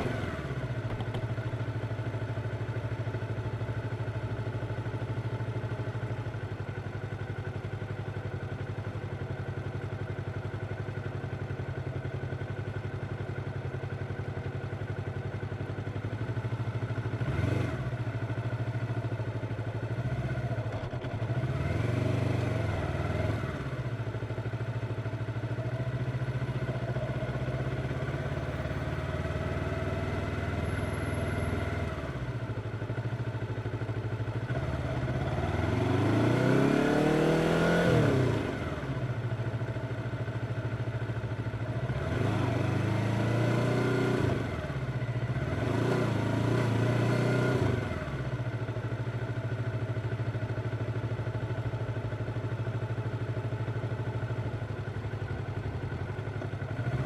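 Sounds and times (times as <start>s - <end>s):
motorcycle engine revving: 0.0s - 1.9s, 16.9s - 18.4s, 19.9s - 24.5s, 34.3s - 39.8s, 41.2s - 49.0s, 54.1s - 57.0s.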